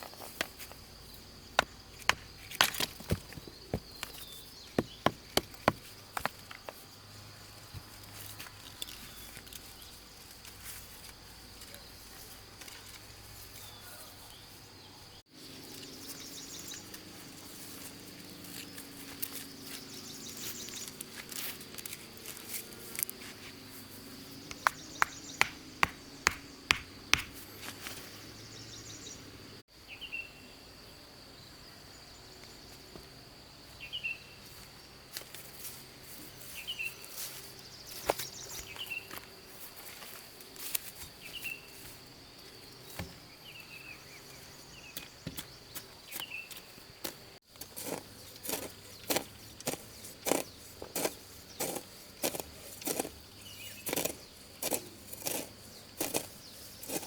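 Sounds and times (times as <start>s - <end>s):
insects droning: 0.0s - 57.0s
sharp knocks: 24.5s - 27.4s.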